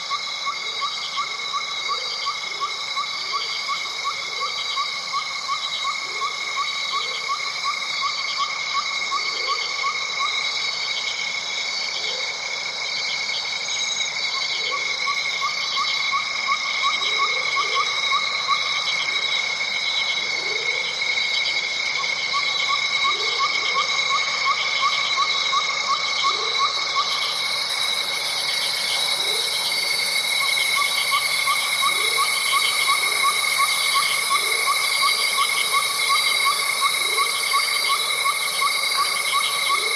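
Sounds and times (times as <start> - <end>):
shrill insect trills: 0.0 - 39.9
low rising frog calls: 14.0 - 39.9.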